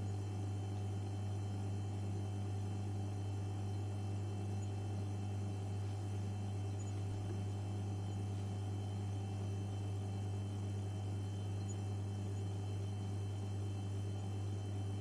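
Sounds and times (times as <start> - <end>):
electrical hum and buzz: 0.0 - 15.0.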